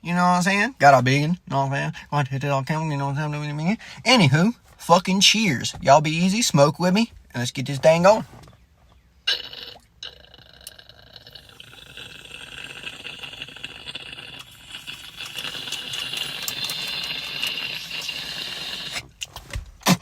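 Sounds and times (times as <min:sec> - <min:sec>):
water bong bubbling: 0:09.3 - 0:19.1.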